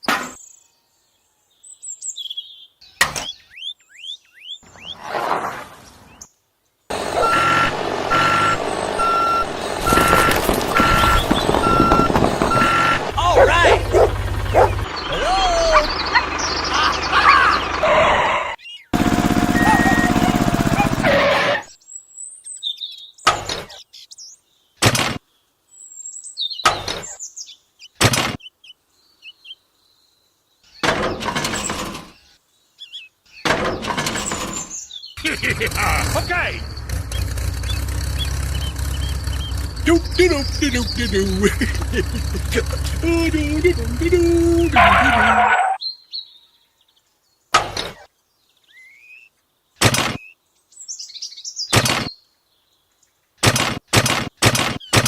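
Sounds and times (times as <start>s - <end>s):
small birds chirping: 0.0s - 5.1s, 5.8s - 21.0s, 21.8s - 55.0s
reversing alarm beeping: 6.9s - 14.8s
engine running: 6.9s - 18.4s, 19.0s - 21.5s, 35.2s - 45.5s.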